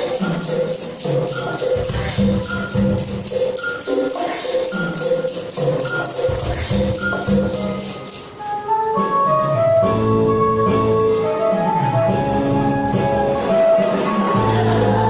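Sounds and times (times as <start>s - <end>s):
choir singing sustained chords: 13.9s - 15.0s.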